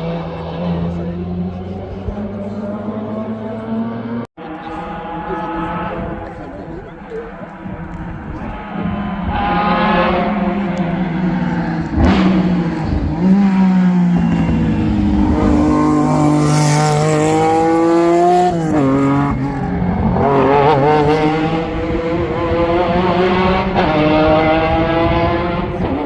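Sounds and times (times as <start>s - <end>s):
racing car engine accelerating: 0.0s - 26.0s.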